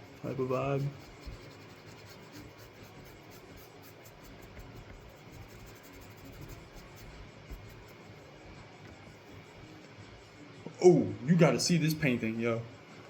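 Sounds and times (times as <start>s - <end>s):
painting tool scratching paint: 0.0s - 8.1s.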